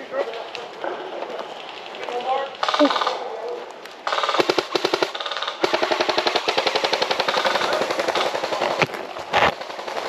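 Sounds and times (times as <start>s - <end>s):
airsoft guns firing full auto: 4.0s - 10.0s.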